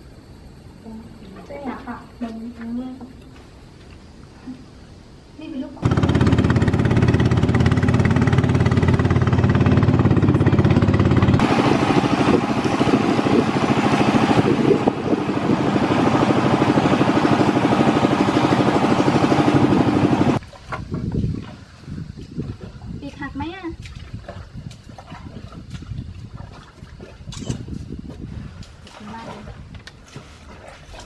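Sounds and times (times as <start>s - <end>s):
motor engine running: 5.8s - 20.4s.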